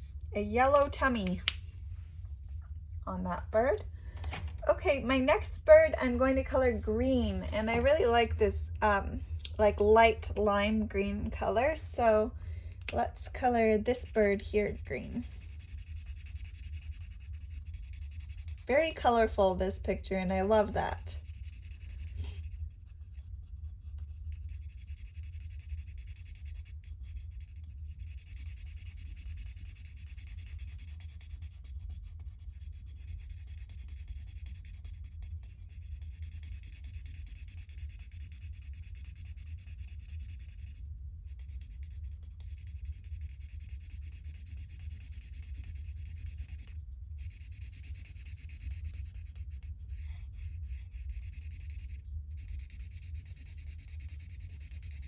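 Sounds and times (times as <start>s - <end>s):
low steady hum: 0.0s - 55.0s
scratchy colouring on paper: 13.0s - 55.0s.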